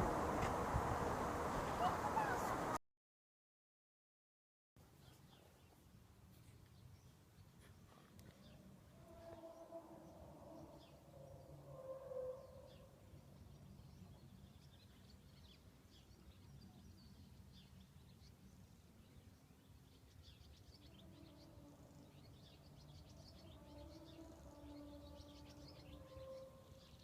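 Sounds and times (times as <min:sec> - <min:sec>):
low steady rumble: 0:00.0 - 0:02.8
small birds chirping: 0:01.5 - 0:02.7, 0:05.0 - 0:08.7, 0:12.4 - 0:27.0.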